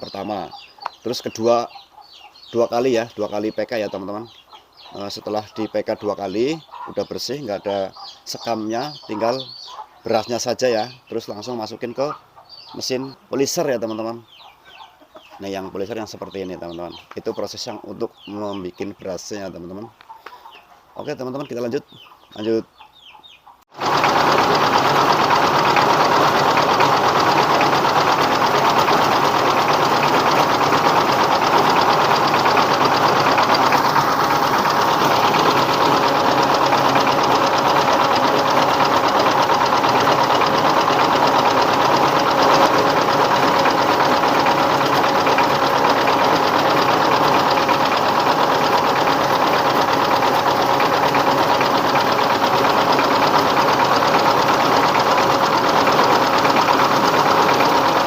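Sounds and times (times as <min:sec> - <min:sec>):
diesel engine knocking: 0:23.8 - 0:58.0
milling machinery whirr: 0:23.8 - 0:58.0.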